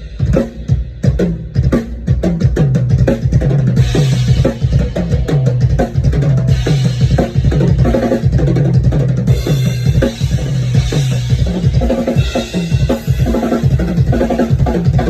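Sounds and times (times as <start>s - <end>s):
snare and bass drum strokes: 0.0s - 15.0s.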